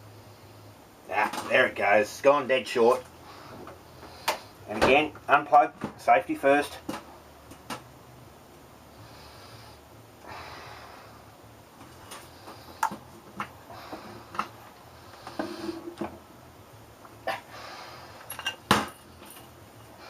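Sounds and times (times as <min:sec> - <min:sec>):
soft breaths: 0:03.0 - 0:04.7, 0:08.8 - 0:16.2, 0:17.2 - 0:20.0.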